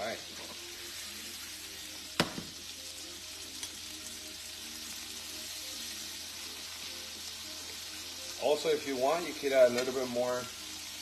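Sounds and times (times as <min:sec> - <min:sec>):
food sizzling in a frying pan: 0:00.0 - 0:11.0
sharp knock: 0:02.2 - 0:02.6.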